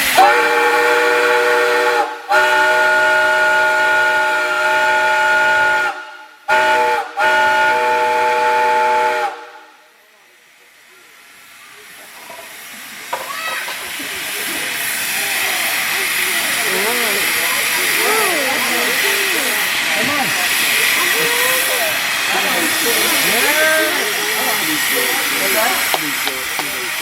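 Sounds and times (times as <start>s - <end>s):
steam whistle blasts: 0.0s - 9.7s.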